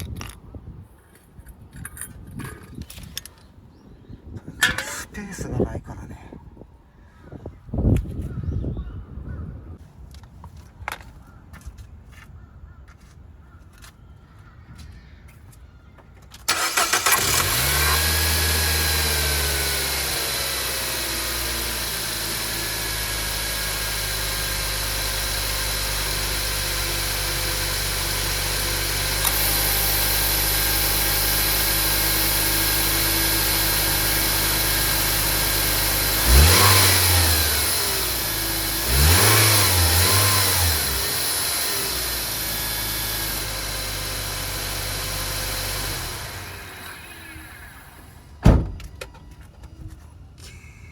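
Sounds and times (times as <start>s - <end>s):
car engine cranking and idling: 4.6s - 6.0s, 16.3s - 50.8s
engine revving: 16.5s - 48.1s.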